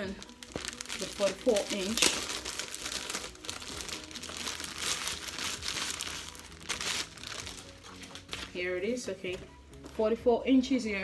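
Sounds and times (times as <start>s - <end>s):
plastic bag crinkling: 0.0s - 8.6s.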